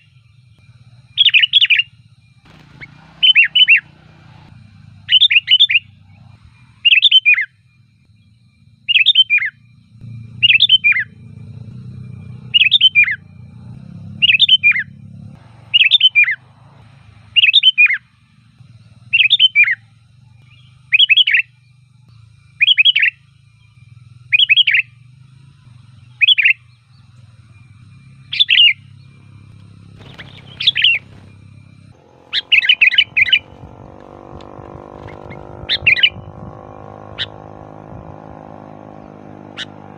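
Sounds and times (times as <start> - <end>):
bulbul singing: 0.0 - 39.9
low rumbling noise: 28.8 - 39.9.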